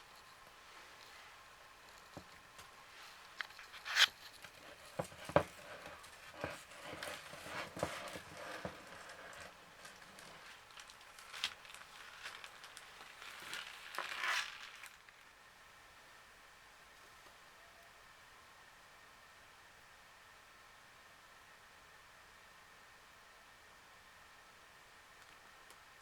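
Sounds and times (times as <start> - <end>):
rustling from handling: 0.0 - 15.0.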